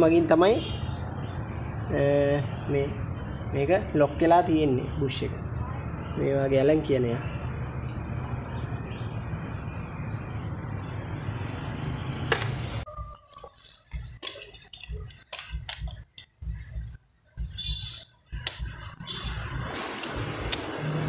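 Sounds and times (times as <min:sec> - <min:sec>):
metal parts and tools clinking: 0:13.3 - 0:16.9.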